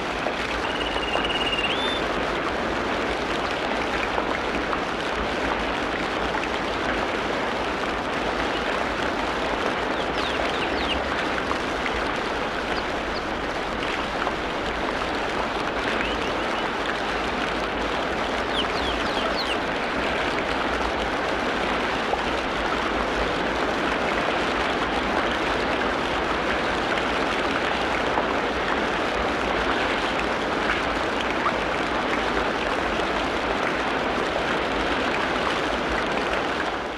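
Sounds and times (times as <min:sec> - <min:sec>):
faint high bird chirps: 0:00.6 - 0:02.0, 0:18.5 - 0:19.6.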